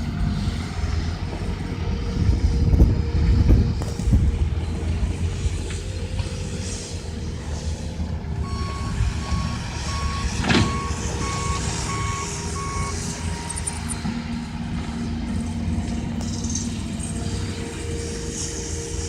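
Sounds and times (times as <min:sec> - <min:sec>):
diesel engine rumble: 0:00.0 - 0:19.0
vehicle reversing alarm beeping: 0:08.3 - 0:19.0.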